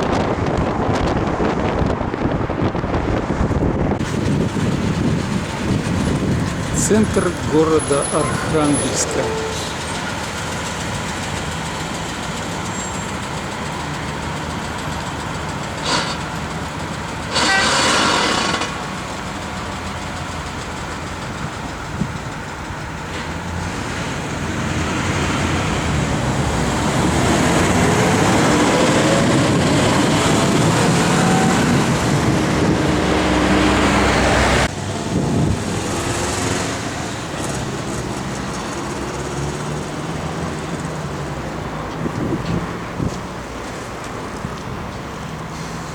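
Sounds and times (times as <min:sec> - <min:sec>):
car road noise: 0:00.0 - 0:45.9
engine revving up: 0:17.3 - 0:18.9, 0:23.1 - 0:41.2.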